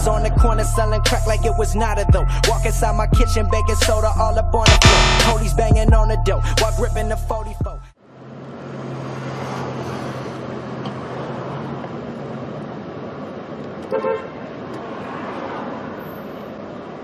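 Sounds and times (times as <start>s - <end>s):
car horn toot: 4.7s - 5.5s
street traffic engine hum: 8.0s - 17.0s.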